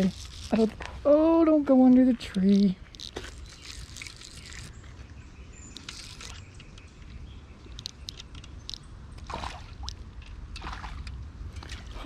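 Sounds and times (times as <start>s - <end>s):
brief rustle: 2.3s - 4.7s.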